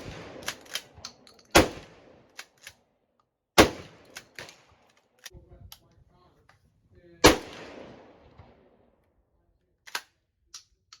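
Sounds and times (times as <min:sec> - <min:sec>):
shotgun firing: 0:00.0 - 0:02.2, 0:03.6 - 0:04.5, 0:07.2 - 0:08.7
shotgun pump clacking: 0:00.4 - 0:01.6, 0:09.9 - 0:11.0.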